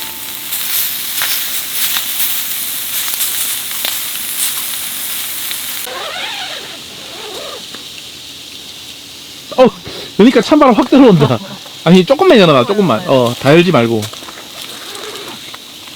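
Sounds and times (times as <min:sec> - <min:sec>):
eel sizzling on a grill: 0:00.0 - 0:15.9.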